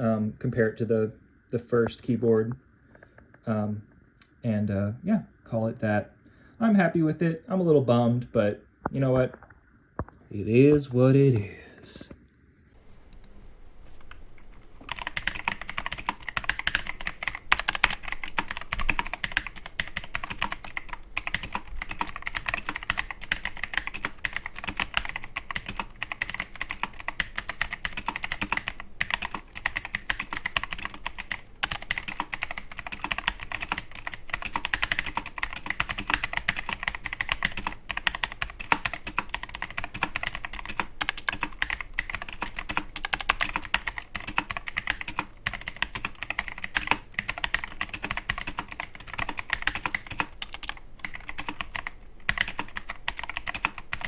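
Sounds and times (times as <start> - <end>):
fast typing on mechanical keyboard: 14.0 - 54.0.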